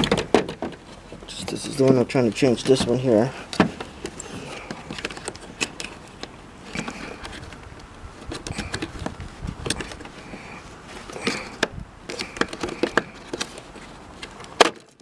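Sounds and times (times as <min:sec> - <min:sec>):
plastic clicks and knocks: 0:11.2 - 0:13.6.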